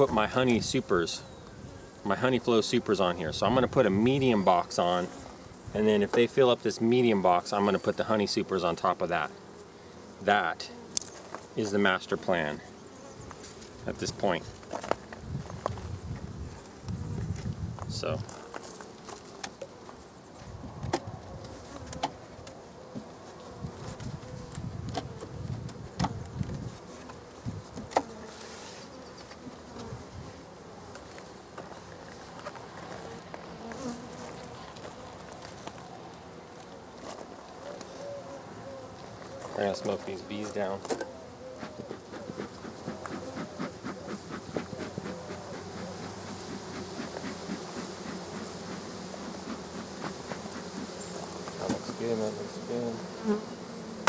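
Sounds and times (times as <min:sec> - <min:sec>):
honey bees buzzing: 0:00.0 - 0:06.1, 0:06.7 - 0:17.2, 0:25.8 - 0:54.0
bees buzzing: 0:41.2 - 0:54.0.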